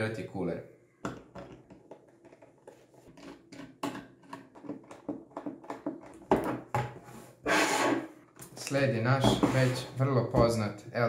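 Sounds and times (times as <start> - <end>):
plastic covers clicking and rustling: 1.1 - 7.0.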